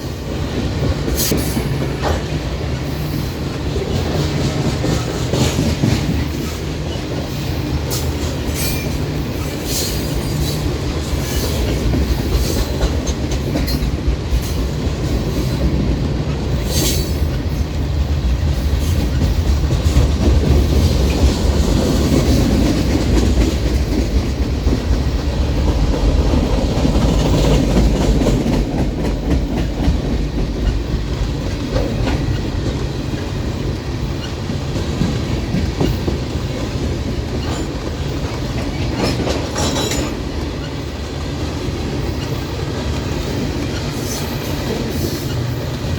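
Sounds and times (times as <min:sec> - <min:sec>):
freight train rumbling: 0:00.0 - 0:45.9
wheels clacking over rail joints: 0:03.8 - 0:45.9.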